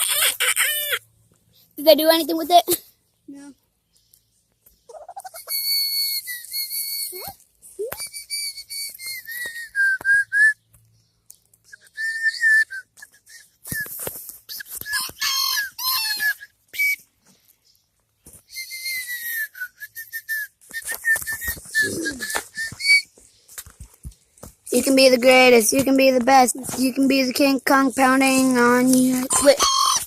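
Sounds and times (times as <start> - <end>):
high whistled notes: 18.5 - 23.1.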